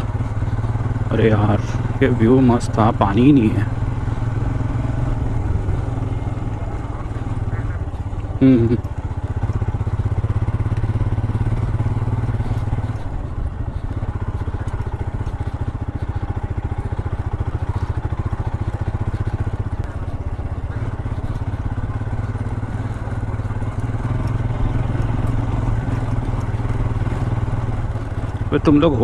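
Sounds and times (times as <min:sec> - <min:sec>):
motorcycle engine thumping: 0:00.0 - 0:29.0.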